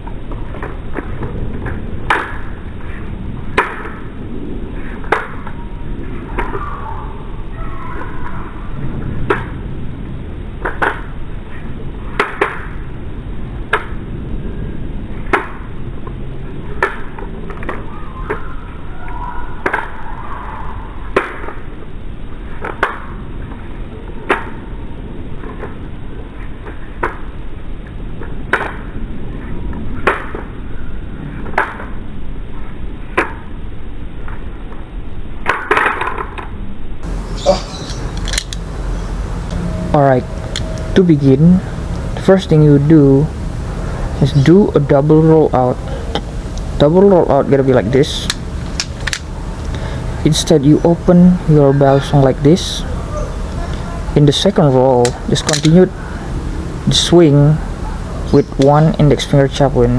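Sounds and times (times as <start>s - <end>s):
low background hum: 0.0s - 59.9s
knife handles clicking: 37.5s - 38.6s, 55.0s - 55.8s.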